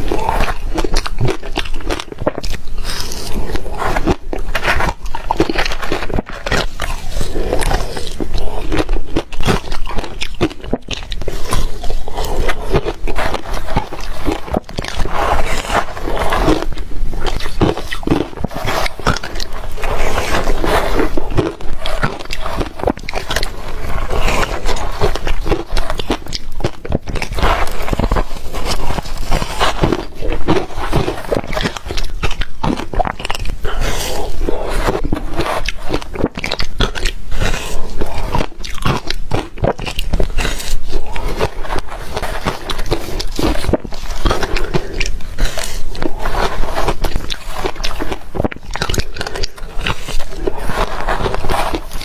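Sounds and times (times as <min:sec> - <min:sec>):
person crunching ice: 0:00.0 - 0:52.0.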